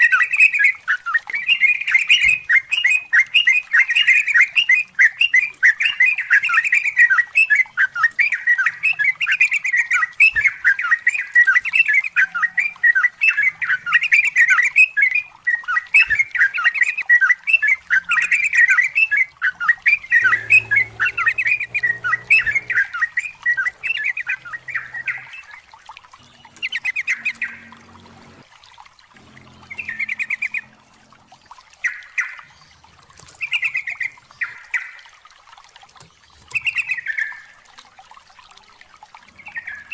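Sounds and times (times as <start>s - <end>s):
bird singing chattering notes: 17.5s - 28.4s, 29.2s - 31.0s.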